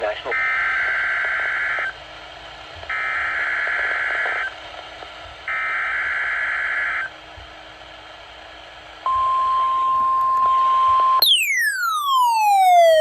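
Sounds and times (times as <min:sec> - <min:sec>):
radio hiss: 0:00.0 - 0:05.5.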